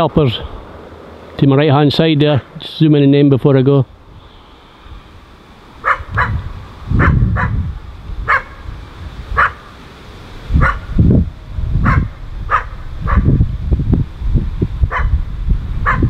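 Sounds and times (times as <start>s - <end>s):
low rumbling bursts: 0.0s - 16.0s
dog barking: 5.8s - 6.4s, 7.0s - 7.6s, 8.3s - 8.6s, 9.4s - 9.7s, 10.6s - 10.9s, 11.8s - 13.3s, 14.9s - 15.1s.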